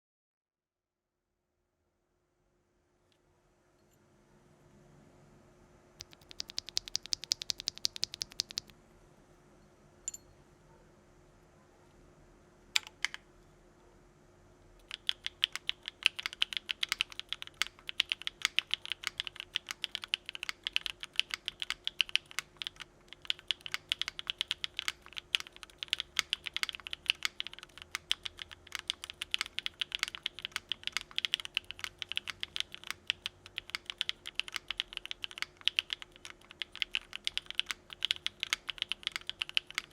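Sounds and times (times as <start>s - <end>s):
typing on mechanical keyboard: 6.0s - 8.7s, 12.8s - 13.2s, 14.8s - 39.9s.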